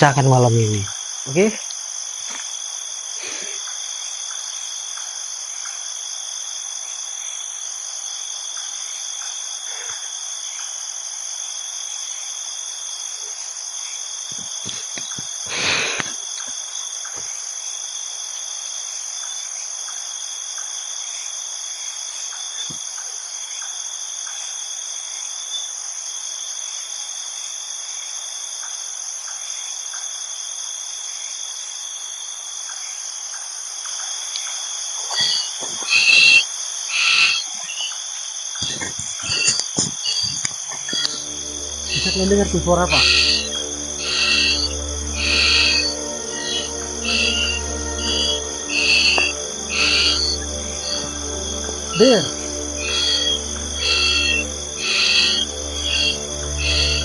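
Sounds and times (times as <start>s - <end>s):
crickets chirping: 0.0s - 57.0s.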